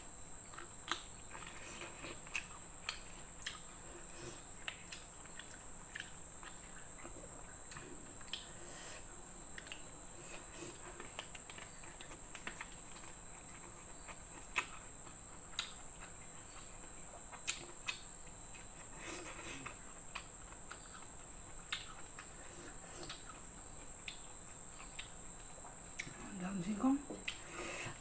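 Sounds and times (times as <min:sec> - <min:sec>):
crickets chirring: 0:00.0 - 0:28.0
person chewing food: 0:00.4 - 0:26.2, 0:27.2 - 0:28.0.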